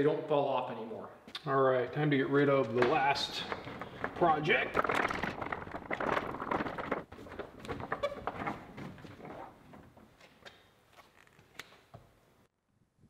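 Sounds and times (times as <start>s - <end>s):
hard objects knocking and clattering: 2.7s - 10.1s.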